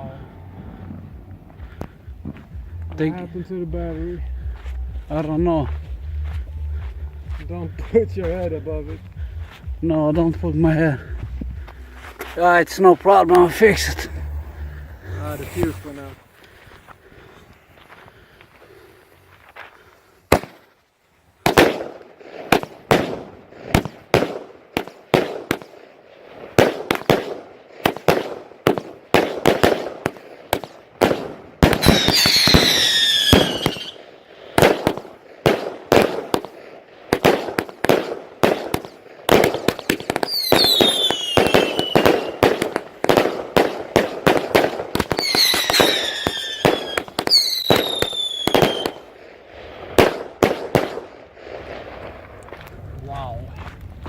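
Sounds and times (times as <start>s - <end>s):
aerial bursts cracking: 13.1s - 16.8s
firework cake firing shots: 20.3s - 20.7s, 21.4s - 25.8s, 26.4s - 49.2s, 49.8s - 52.2s
falling firework whistles: 31.8s - 34.0s, 40.2s - 42.6s, 45.1s - 49.1s.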